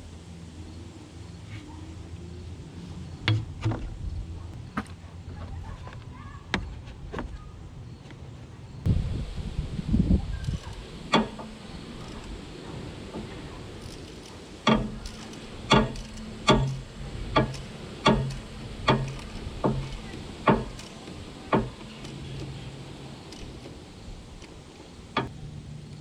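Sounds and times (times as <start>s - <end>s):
ratchet wrench clicking: 10.4s - 12.4s, 13.8s - 22.6s, 23.2s - 24.6s.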